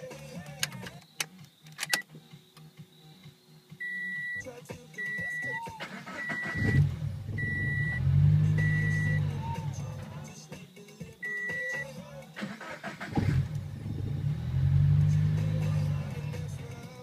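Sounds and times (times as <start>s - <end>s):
sharp clicks: 0.4s - 2.7s
car warning chime beeping: 1.8s - 2.1s, 3.8s - 10.0s, 11.2s - 12.0s
car engine cranking: 5.8s - 10.2s, 12.4s - 17.0s.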